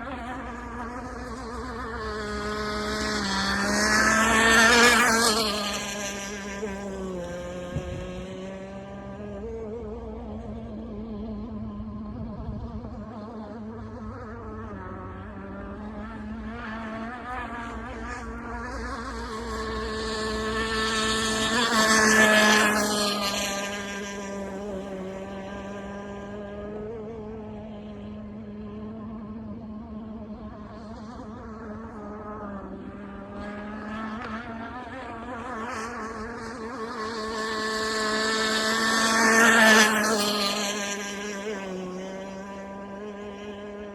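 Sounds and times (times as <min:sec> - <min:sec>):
model boat engine buzzing: 0:00.0 - 0:43.9.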